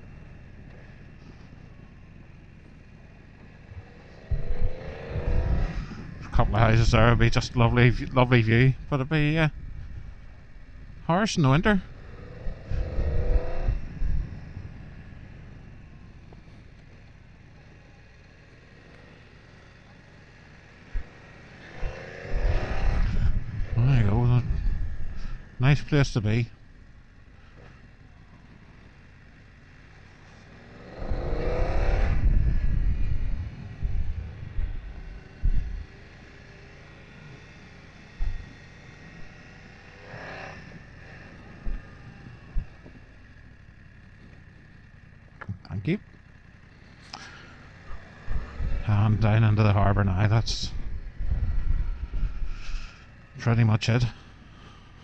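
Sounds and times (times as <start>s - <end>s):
faint steady hum: 0.0s - 55.0s
motorcycle engine accelerating: 0.0s - 55.0s
wind noise on microphone: 31.8s - 36.0s, 50.7s - 52.8s.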